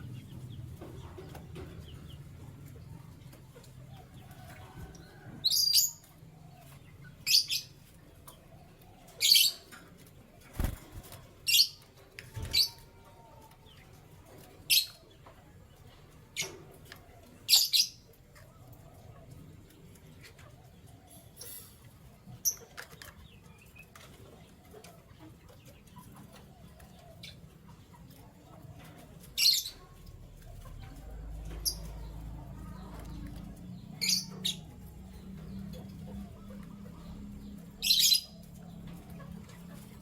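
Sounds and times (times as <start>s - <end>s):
canary chirping: 4.3s - 7.9s, 10.5s - 12.8s, 29.3s - 40.0s.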